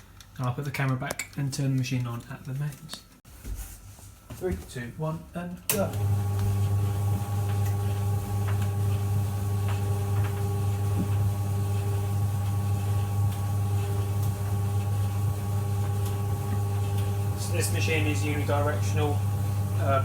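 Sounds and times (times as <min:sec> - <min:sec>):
tumble dryer humming: 0:05.7 - 0:20.0.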